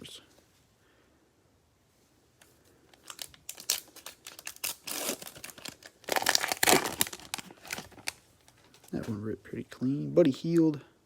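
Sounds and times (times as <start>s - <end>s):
card pack wrapper crinkling and tearing: 3.0s - 9.1s.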